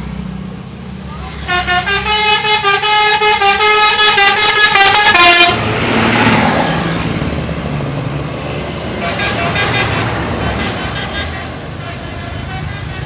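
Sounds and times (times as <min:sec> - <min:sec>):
musical bus horn: 0:01.4 - 0:05.7, 0:08.9 - 0:13.0.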